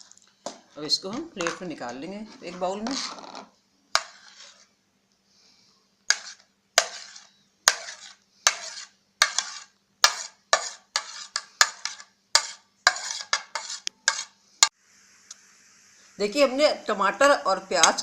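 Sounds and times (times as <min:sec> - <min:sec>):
spoon scraping and tapping bowl: 0:00.0 - 0:01.7, 0:02.5 - 0:04.6, 0:06.1 - 0:14.4.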